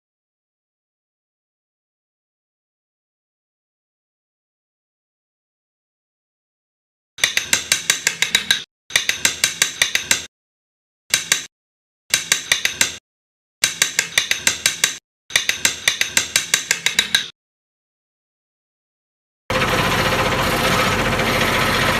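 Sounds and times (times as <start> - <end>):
hand tool clicking rapidly: 7.2 - 10.3, 11.1 - 11.5, 12.1 - 13.0, 13.6 - 17.3.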